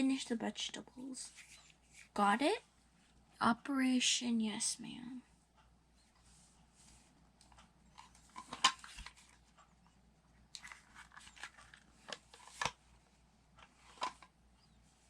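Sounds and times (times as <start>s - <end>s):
light rustling and scraping: 1.2s - 2.2s.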